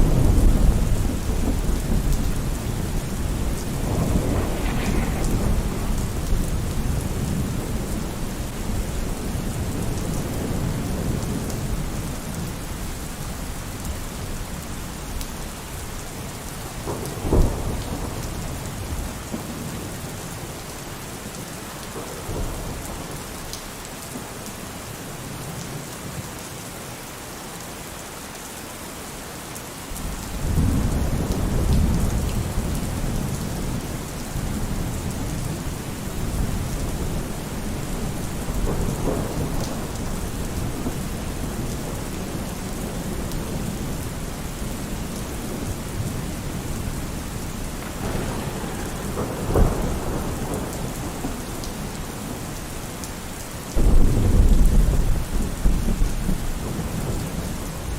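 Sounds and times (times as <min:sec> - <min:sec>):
thunder crack: 0:00.0 - 0:09.0, 0:16.9 - 0:18.3, 0:47.8 - 0:52.4, 0:53.8 - 0:57.2
thunder rumble: 0:00.0 - 0:13.1, 0:15.8 - 0:20.2, 0:30.0 - 0:53.1, 0:53.7 - 0:57.9
heavy rain falling: 0:00.0 - 0:57.9.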